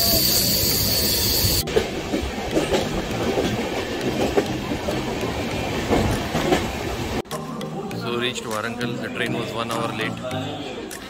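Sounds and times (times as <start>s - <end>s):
train rumbling on rails: 0.0s - 7.2s
wheels clacking and knocking: 1.6s - 6.9s.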